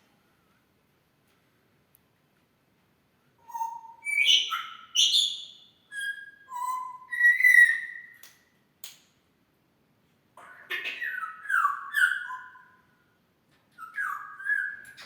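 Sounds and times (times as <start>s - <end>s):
parrot whistling: 5.9s - 8.1s.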